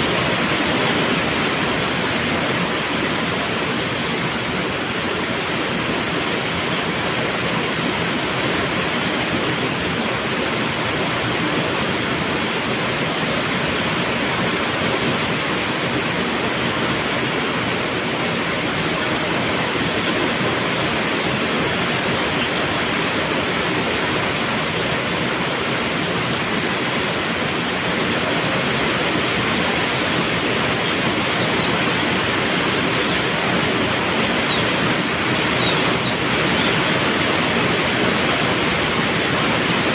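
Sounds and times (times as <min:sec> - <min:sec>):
heavy rain: 0:00.0 - 0:39.9
bird chirps: 0:21.1 - 0:21.6, 0:30.8 - 0:32.1, 0:32.7 - 0:33.3, 0:34.2 - 0:36.9.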